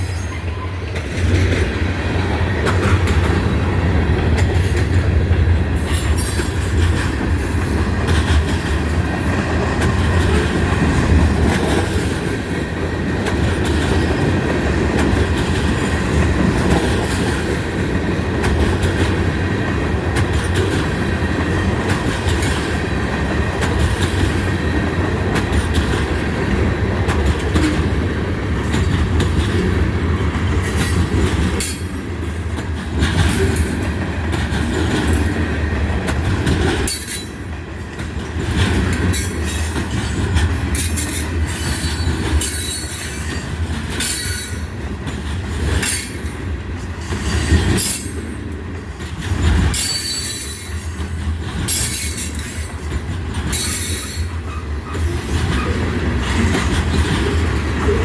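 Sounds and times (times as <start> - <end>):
train wheels squealing: 0.0 - 1.0, 39.1 - 44.6, 49.7 - 51.0, 51.7 - 56.5
freight train cars rumbling: 0.0 - 58.0
wheels clattering over rail joints: 0.0 - 58.0.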